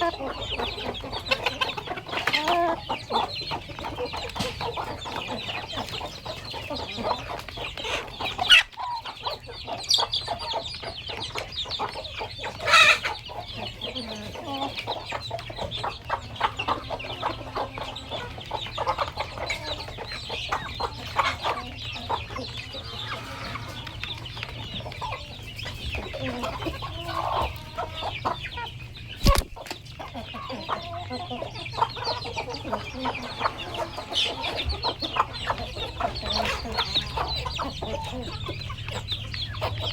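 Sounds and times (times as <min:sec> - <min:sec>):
chickens clucking: 0:00.0 - 0:39.9
short clicks: 0:29.2 - 0:29.8.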